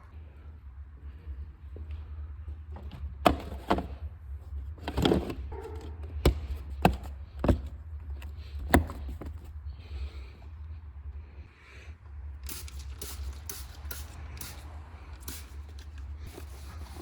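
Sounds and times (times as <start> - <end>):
sharp knocks and clunks: 4.8 - 7.8.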